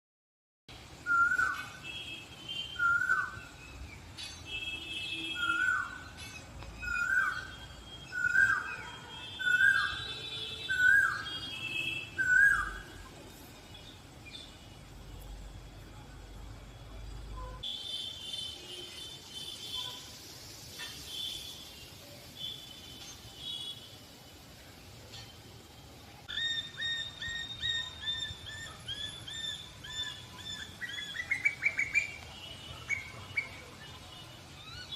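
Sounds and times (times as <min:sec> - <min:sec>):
koel whistled call: 0:01.0 - 0:01.7, 0:02.6 - 0:03.6.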